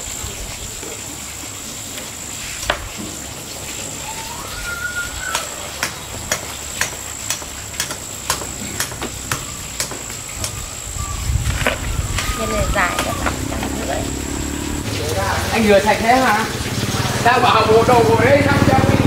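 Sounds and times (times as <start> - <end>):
insects trilling: 0.0 - 19.0
sharp knocks: 5.8 - 10.6.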